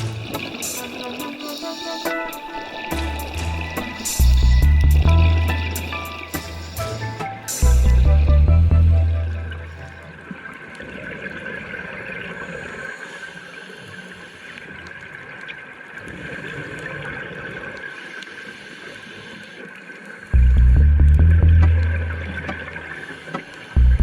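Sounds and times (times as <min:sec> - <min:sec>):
water rushing: 0:00.0 - 0:24.0
music with heavy bass: 0:02.9 - 0:10.0, 0:20.4 - 0:22.6, 0:23.8 - 0:24.0.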